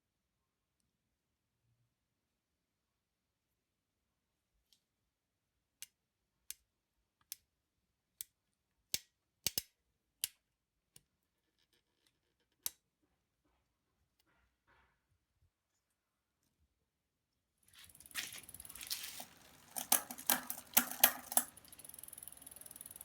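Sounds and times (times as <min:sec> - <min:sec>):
sharp mechanical clicks: 0:17.8 - 0:23.0.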